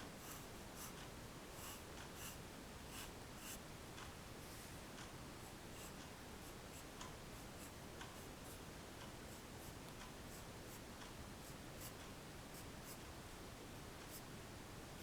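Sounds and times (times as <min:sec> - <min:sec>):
pencil scratching on paper: 0:00.2 - 0:01.0, 0:01.6 - 0:03.6.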